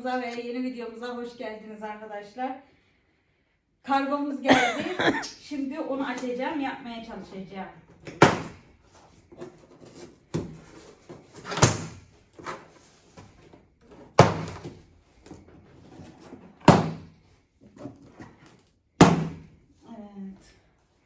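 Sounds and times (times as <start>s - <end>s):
cardboard parcel thuds: 14.0s - 15.5s, 16.6s - 17.2s.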